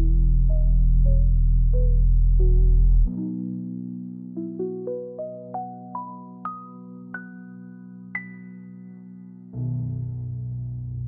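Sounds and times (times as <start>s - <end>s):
low synth chord: 0.0s - 4.4s.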